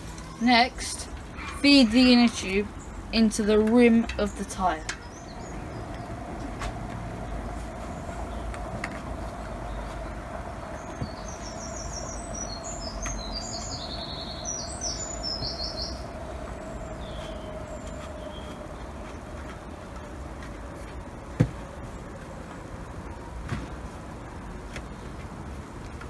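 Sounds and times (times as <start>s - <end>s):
faint constant hum: 0.0s - 26.0s
small bird singing: 0.2s - 6.3s, 9.2s - 19.2s.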